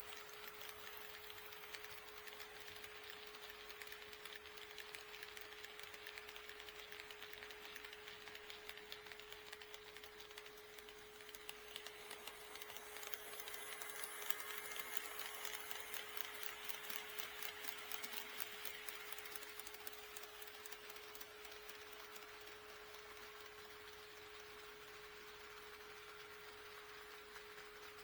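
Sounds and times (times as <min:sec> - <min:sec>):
model train wheels clicking on rails: 0:00.0 - 0:28.0.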